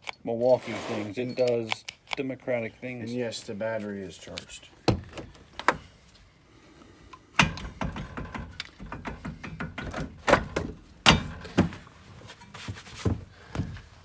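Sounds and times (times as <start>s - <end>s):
metallic knocks of hand tools: 7.4s - 11.7s.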